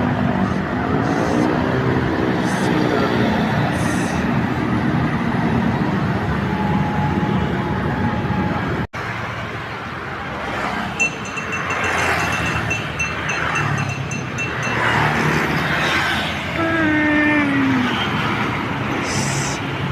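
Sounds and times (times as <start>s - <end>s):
buses passing close by: 0.0s - 19.9s
roadside traffic: 0.0s - 19.9s
high-pitched beeping: 11.0s - 15.3s.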